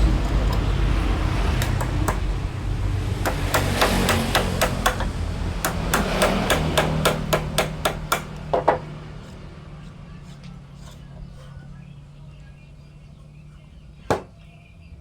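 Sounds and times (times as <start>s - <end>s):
hammer striking wood: 1.6s - 2.3s, 3.2s - 9.0s, 14.1s - 14.4s.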